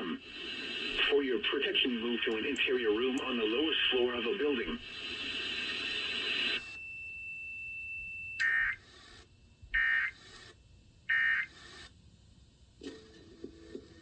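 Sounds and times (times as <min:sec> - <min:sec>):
thin steady high tone: 0:04.9 - 0:09.6
buzzy electronic data squawks: 0:08.4 - 0:08.9.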